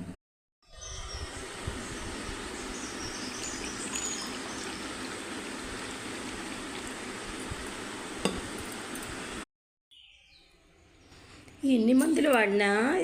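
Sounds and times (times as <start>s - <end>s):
pot boiling and bubbling: 0.7s - 9.4s.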